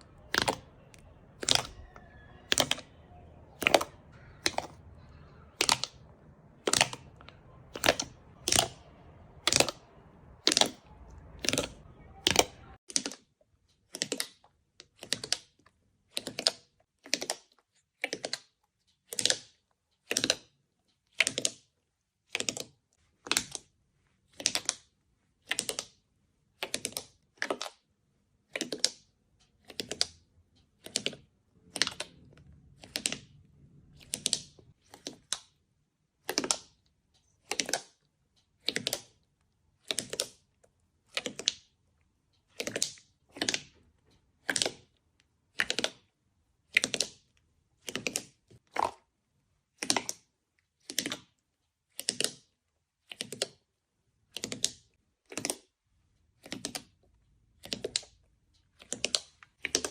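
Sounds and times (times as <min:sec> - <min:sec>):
slime squishing and crackling: 0:00.0 - 0:13.2, 0:42.4 - 0:59.9.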